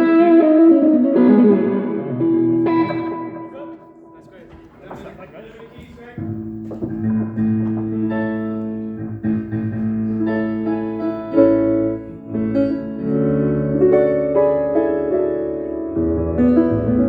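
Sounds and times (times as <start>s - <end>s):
electric piano chords: 4.8s - 17.0s.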